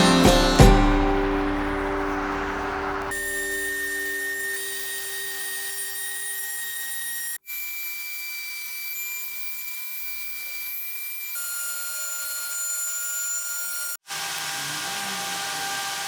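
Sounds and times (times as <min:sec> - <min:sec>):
power tool whining on wood: 0:00.0 - 0:16.0.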